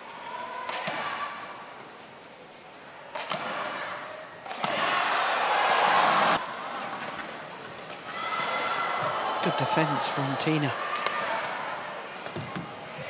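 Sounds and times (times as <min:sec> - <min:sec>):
crowd cheering: 0:04.5 - 0:06.8, 0:08.0 - 0:13.0.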